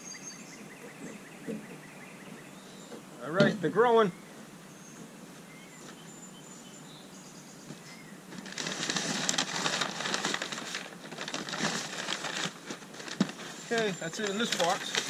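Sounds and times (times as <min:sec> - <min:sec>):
faint bird chirps: 0:04.0 - 0:08.2
packing paper rustling: 0:08.3 - 0:15.0.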